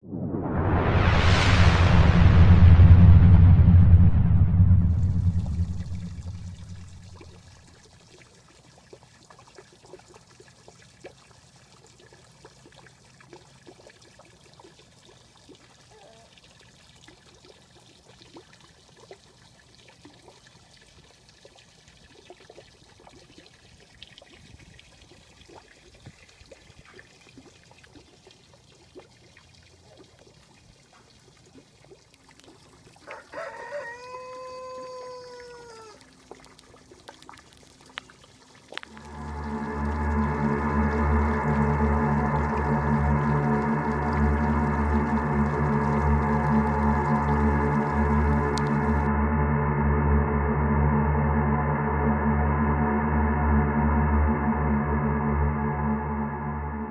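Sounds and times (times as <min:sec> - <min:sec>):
long animal call: 0:34.6 - 0:36.1
music: 0:38.9 - 0:56.9.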